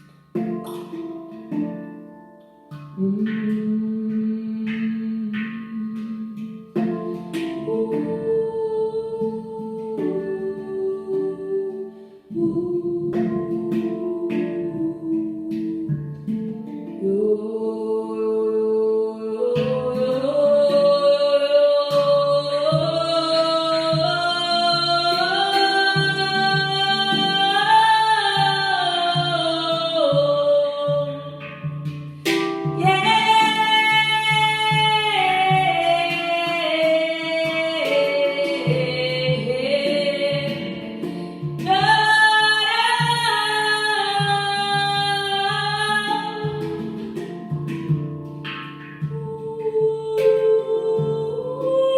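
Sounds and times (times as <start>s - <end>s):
woman singing: 3.0s - 51.9s
plucked guitar: 19.6s - 50.5s.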